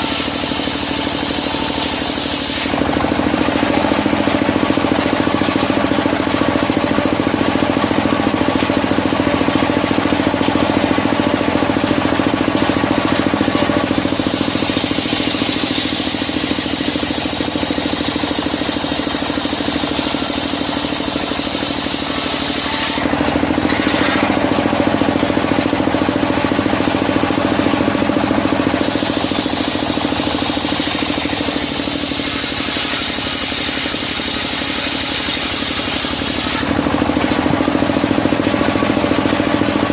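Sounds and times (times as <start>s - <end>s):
saw blade cutting timber hiss: 0.0s - 3.0s, 13.3s - 24.5s, 28.7s - 36.7s
circular saw humming: 0.0s - 4.6s, 12.7s - 38.5s.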